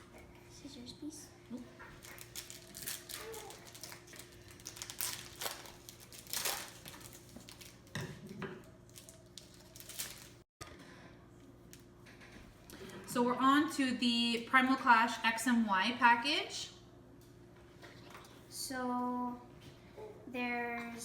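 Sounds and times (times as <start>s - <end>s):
plastic crinkling and rustling: 1.8s - 10.5s
scissors cutting plastic packaging: 2.0s - 7.9s.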